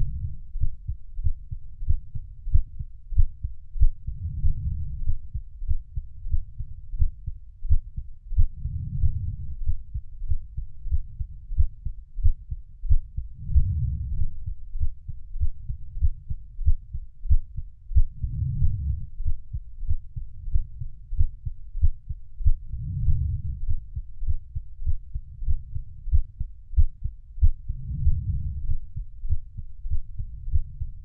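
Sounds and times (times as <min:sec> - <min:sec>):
heartbeat thumps: 0:00.0 - 0:31.0.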